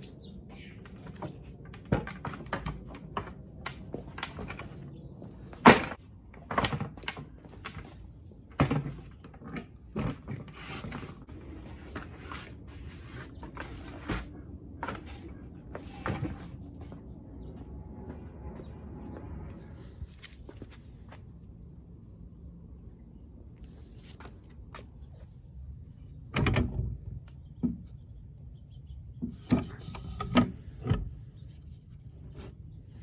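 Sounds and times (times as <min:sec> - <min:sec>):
objects knocking and clunking: 0:00.8 - 0:11.4.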